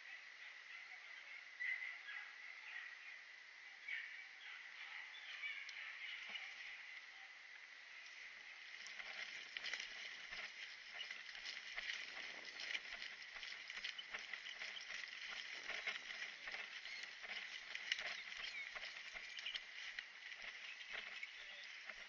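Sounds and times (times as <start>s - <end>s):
rustling and light crackling: 5.3s - 7.0s, 8.0s - 22.0s.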